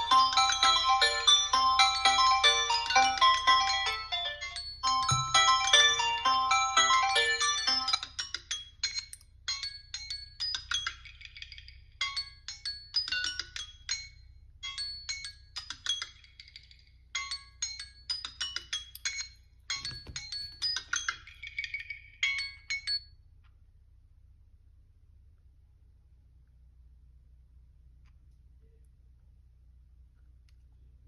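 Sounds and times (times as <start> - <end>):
phone alarm bell-like melody: 0.0 - 23.0.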